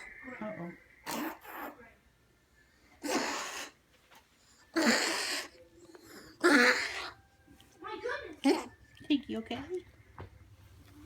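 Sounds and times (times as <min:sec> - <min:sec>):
pet coughing: 0:01.0 - 0:01.8, 0:03.0 - 0:03.8, 0:04.6 - 0:07.2, 0:08.3 - 0:08.8.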